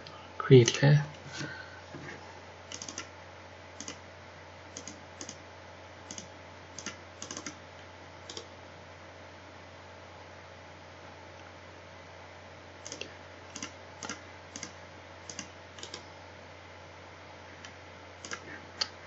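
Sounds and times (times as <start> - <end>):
low electrical hum: 0.0 - 19.0
keyboard keys clicking: 2.7 - 3.1, 4.8 - 5.4, 6.1 - 7.6, 12.8 - 14.7, 15.3 - 16.0, 18.2 - 18.4.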